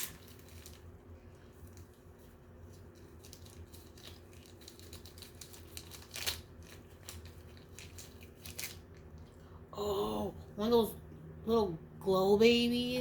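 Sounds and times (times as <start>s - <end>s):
packaging rustling and crackling: 0.0s - 9.4s.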